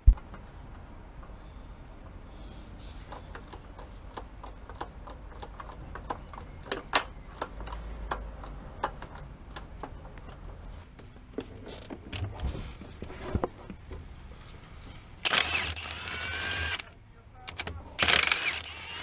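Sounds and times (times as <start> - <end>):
sharp clicks and light knocks: 3.0 - 12.3.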